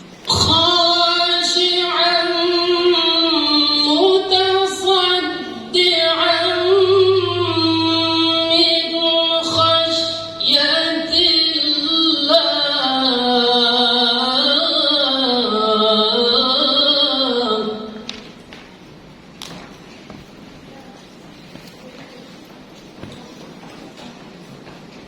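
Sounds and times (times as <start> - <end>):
man reciting melodically: 0.2 - 18.0.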